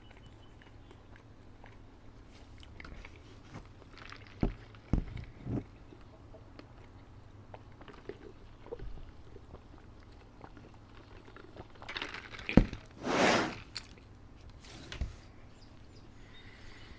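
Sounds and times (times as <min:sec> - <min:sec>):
chewing and crunching: 0:00.0 - 0:13.0
brief rush of noise: 0:13.0 - 0:13.6.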